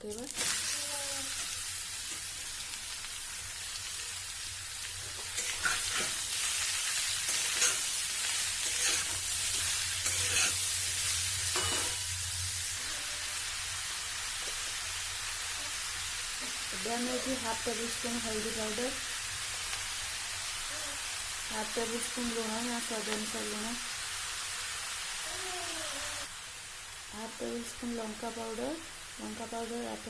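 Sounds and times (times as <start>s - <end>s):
vegetables sizzling in hot oil: 0.0s - 30.0s
spatula scraping a pan: 5.2s - 12.0s.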